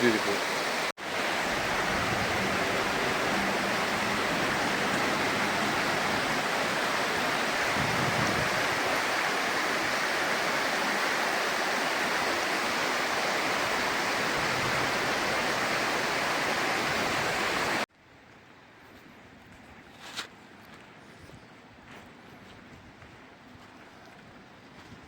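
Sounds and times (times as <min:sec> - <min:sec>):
flowing water rushing: 0:00.0 - 0:17.9.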